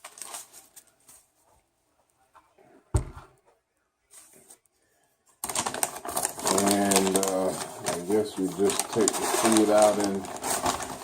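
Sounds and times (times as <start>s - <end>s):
packaging rustling: 0.0s - 1.0s, 5.4s - 11.0s.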